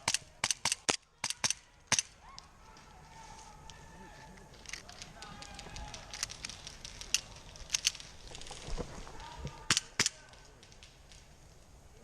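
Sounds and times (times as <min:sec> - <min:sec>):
airsoft guns firing: 0:00.0 - 0:02.2.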